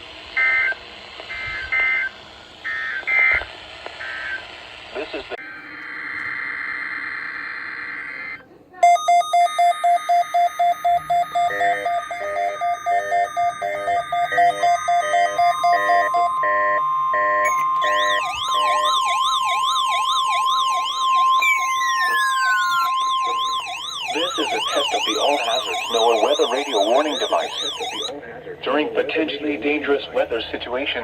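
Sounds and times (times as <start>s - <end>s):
steady high tone: 5.4s - 28.1s
rapid electronic beeping: 6.4s - 28.1s
second beep pattern: 8.8s - 28.1s
warbling alert tone: 8.8s - 28.1s.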